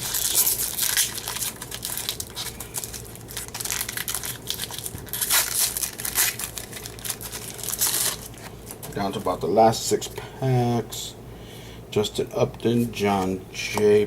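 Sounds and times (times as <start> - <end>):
foil wrapper crinkling: 0.0 - 9.3.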